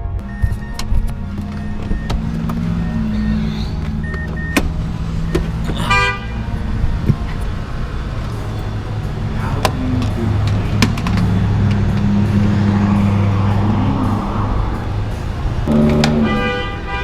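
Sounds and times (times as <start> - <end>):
car engine running while driving: 0.0 - 17.0
brief high tone: 15.7 - 17.0.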